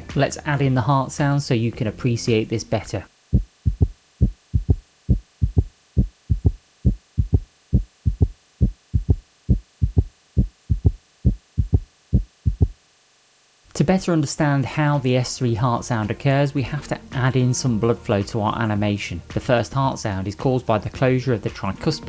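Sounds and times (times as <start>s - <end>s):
heartbeat thumps in triplets: 3.2s - 12.8s.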